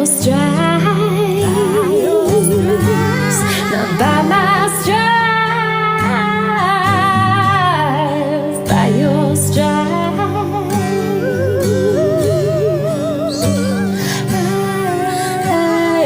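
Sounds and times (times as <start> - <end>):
instrumental backing: 0.0 - 15.8
woman singing held notes: 0.3 - 6.5.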